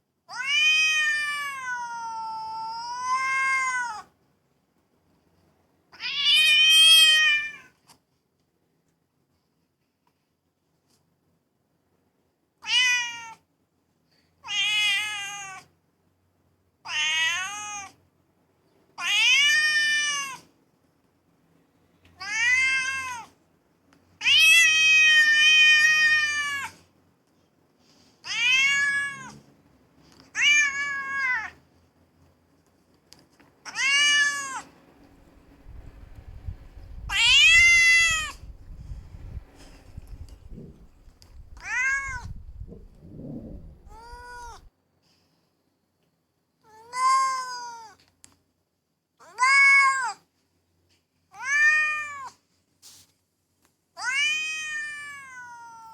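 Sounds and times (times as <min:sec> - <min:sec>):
cat meowing: 0:00.3 - 0:04.1, 0:06.0 - 0:07.8, 0:12.6 - 0:13.4, 0:14.4 - 0:15.7, 0:16.9 - 0:18.0, 0:19.0 - 0:20.4, 0:22.2 - 0:23.3, 0:24.2 - 0:26.8, 0:28.2 - 0:29.4, 0:30.3 - 0:31.6, 0:33.6 - 0:34.7, 0:37.0 - 0:38.6, 0:39.8 - 0:44.7, 0:46.6 - 0:48.0, 0:49.2 - 0:50.2, 0:51.3 - 0:52.4, 0:54.0 - 0:55.9
low rumble: 0:35.2 - 0:44.7.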